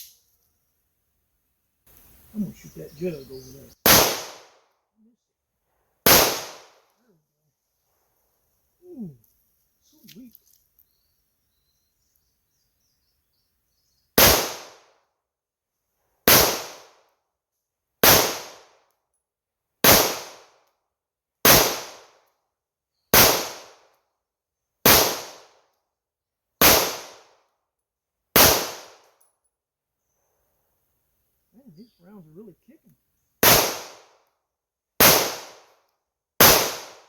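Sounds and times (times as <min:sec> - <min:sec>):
pistol shots: 0:03.8 - 0:04.6, 0:06.0 - 0:06.9, 0:14.2 - 0:14.9, 0:16.3 - 0:17.0, 0:18.0 - 0:18.7, 0:19.8 - 0:20.5, 0:21.4 - 0:22.1, 0:23.2 - 0:23.8, 0:24.9 - 0:25.5, 0:26.6 - 0:27.3, 0:28.4 - 0:29.0, 0:33.4 - 0:34.1, 0:35.0 - 0:35.7, 0:36.4 - 0:37.0.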